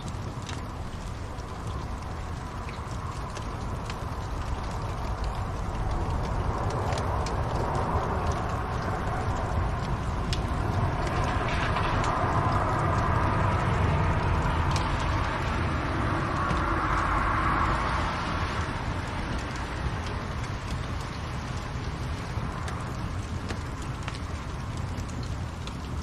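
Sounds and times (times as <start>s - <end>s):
fire crackles and pops: 0.0s - 26.0s
fire hiss and rumble: 0.0s - 26.0s.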